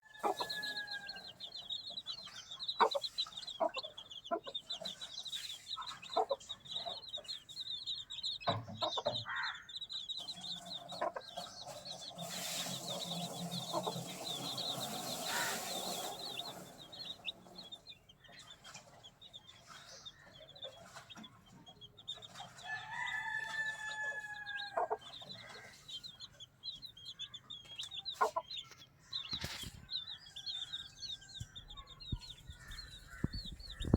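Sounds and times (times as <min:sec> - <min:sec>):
drawn-out chicken call: 0:00.0 - 0:01.4, 0:11.7 - 0:17.7, 0:22.4 - 0:25.8
chicks peeping: 0:00.0 - 0:33.9.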